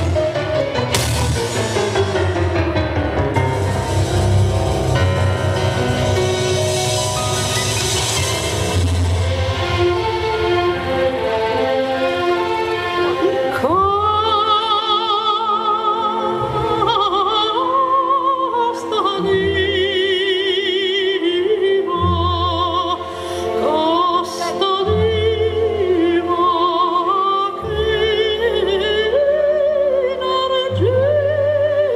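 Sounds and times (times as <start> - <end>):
orchestral music: 0.0 - 31.9
operatic singing voice: 13.0 - 31.9.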